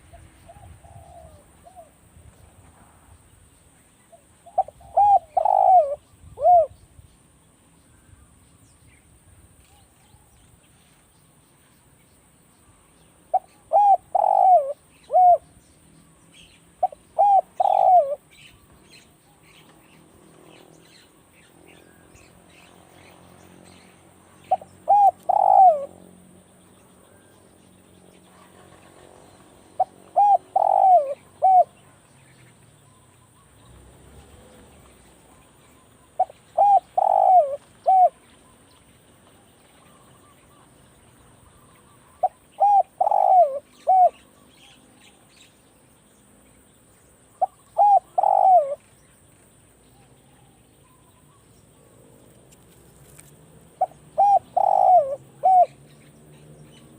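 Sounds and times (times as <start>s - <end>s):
dove cooing: 0.0s - 2.0s, 4.1s - 6.8s, 13.3s - 15.5s, 16.8s - 19.7s, 24.4s - 26.0s, 29.8s - 32.0s, 35.2s - 38.3s, 41.9s - 44.8s, 47.4s - 48.9s, 53.8s - 55.8s
small birds chirping: 0.0s - 56.9s.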